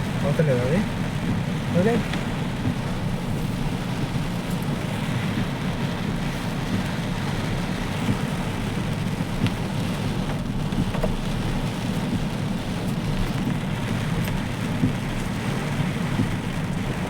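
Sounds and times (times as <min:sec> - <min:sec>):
heavy rain falling: 0:00.0 - 0:17.0
faint drip ticks: 0:10.3 - 0:16.6.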